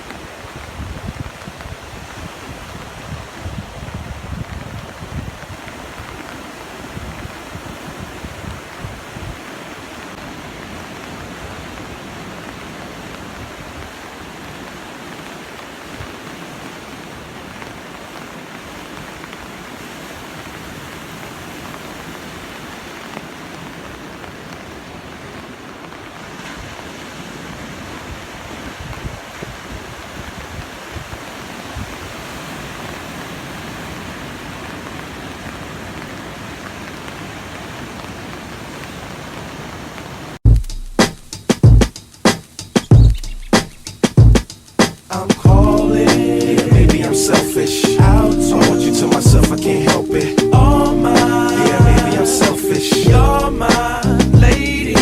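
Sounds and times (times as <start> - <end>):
wind rumbling on microphone: 0.0 - 14.6, 26.5 - 35.4
ocean surf washing: 0.0 - 40.4, 41.0 - 55.0.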